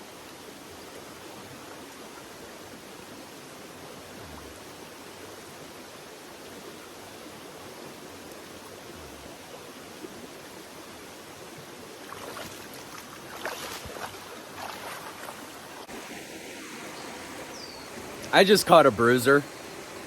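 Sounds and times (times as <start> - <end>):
stream water flowing: 0.0 - 20.0
short splashes: 12.0 - 15.6.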